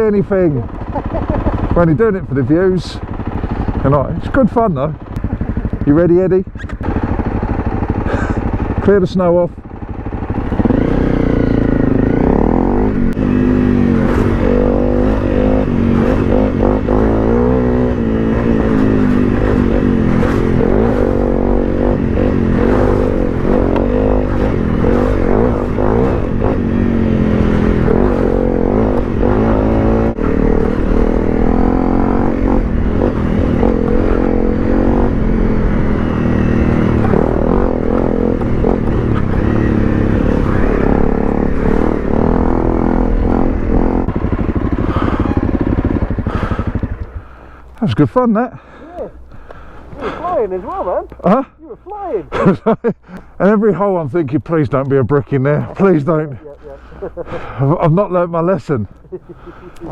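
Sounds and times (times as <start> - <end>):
motorcycle engine revving: 0.0 - 59.9
bike clattering over rough ground: 11.6 - 47.9.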